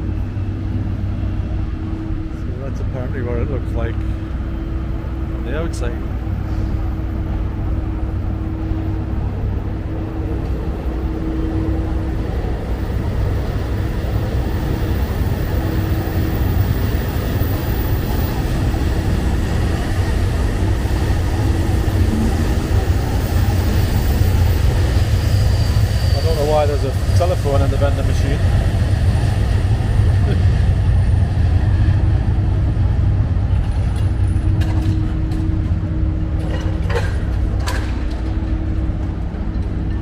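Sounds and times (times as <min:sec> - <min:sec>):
low street rumble: 0:00.0 - 0:40.0.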